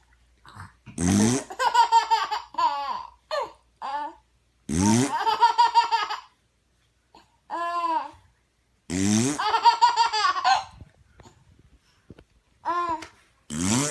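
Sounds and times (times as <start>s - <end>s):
man making fart-like noise: 0.9s - 1.5s, 4.7s - 5.2s, 8.9s - 9.5s, 13.5s - 13.9s
baby laughing: 1.4s - 4.2s, 5.1s - 6.4s, 9.4s - 10.8s.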